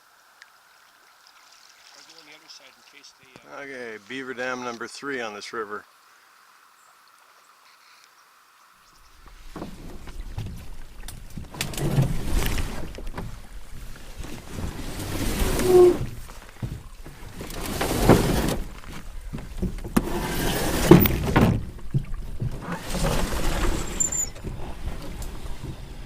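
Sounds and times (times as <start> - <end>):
paddle strokes swishing through water: 9.2 - 26.0
short squeak: 23.4 - 24.4.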